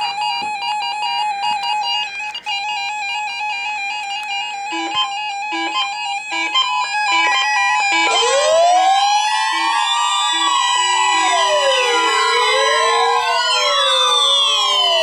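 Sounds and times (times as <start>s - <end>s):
instrumental music: 0.0s - 15.0s
siren wails: 3.3s - 15.0s.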